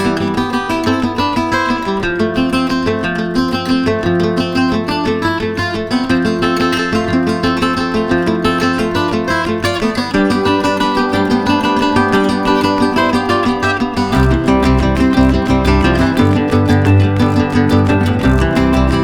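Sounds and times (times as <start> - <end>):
acoustic guitar music: 0.0 - 19.0
heavy bass: 14.1 - 19.0.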